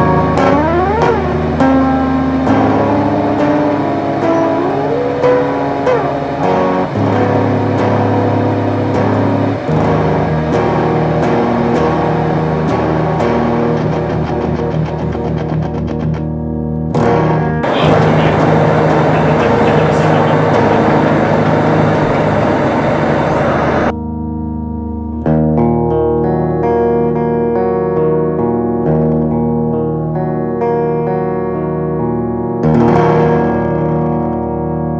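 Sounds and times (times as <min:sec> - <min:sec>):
sustained guitar chords: 0:00.0 - 0:34.9
loud hissing noise: 0:17.6 - 0:23.9
bass line: 0:17.6 - 0:24.0.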